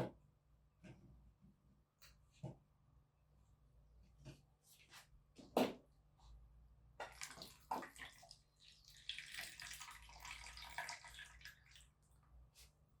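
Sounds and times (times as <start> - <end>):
water running from a tap: 7.1 - 11.9.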